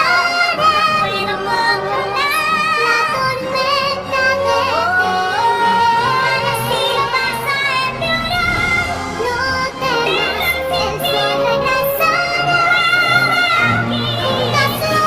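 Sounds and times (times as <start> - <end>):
women singing a duet: 0.0 - 15.0
orchestral accompaniment: 6.9 - 12.1.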